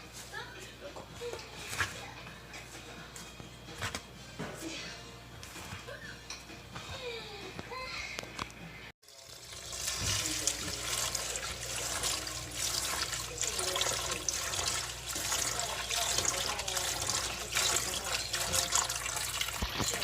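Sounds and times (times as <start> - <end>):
water running and splashing: 9.0 - 20.0.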